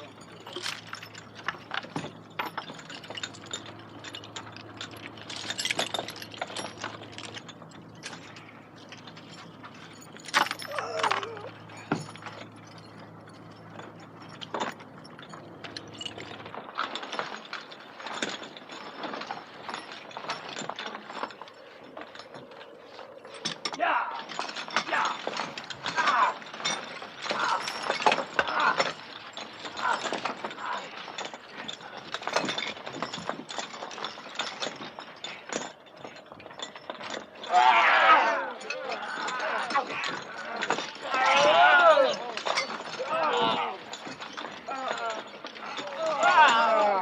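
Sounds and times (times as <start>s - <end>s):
metal chains rattling: 0.0s - 47.0s
person yelling: 10.7s - 11.5s, 23.8s - 25.2s, 26.0s - 26.4s, 37.5s - 40.0s, 41.0s - 42.4s, 43.0s - 43.8s, 45.8s - 47.0s.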